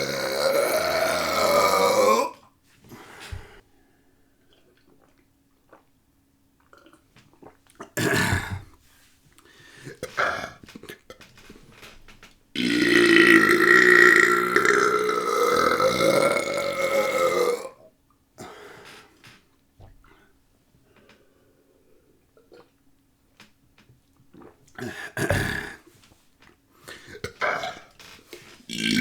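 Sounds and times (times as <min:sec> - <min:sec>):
long burp: 0:00.0 - 0:02.4, 0:07.9 - 0:08.7, 0:10.0 - 0:10.7, 0:12.6 - 0:18.5, 0:24.4 - 0:25.9, 0:28.7 - 0:29.0.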